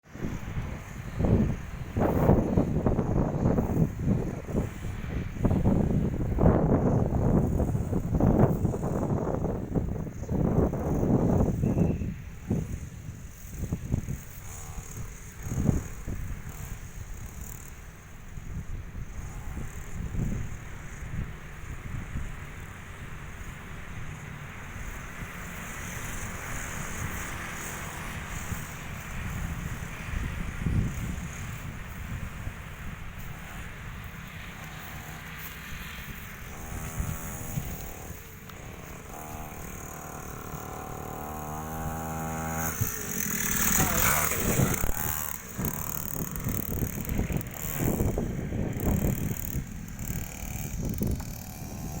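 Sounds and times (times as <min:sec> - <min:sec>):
small motorbike engine rumble: 0:00.0 - 0:52.0
wind buffeting microphone: 0:00.0 - 0:52.0
ratchet-like mechanical rattle: 0:12.6 - 0:21.1, 0:24.8 - 0:52.0.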